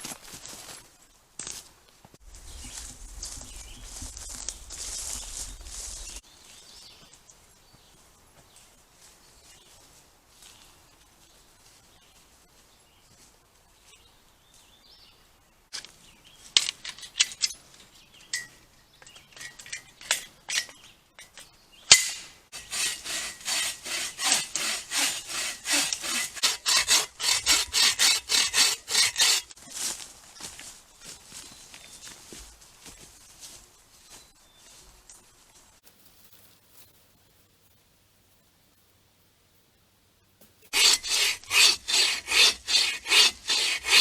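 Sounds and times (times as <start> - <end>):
hand saw cutting wood: 21.9 - 29.6, 40.7 - 44.0.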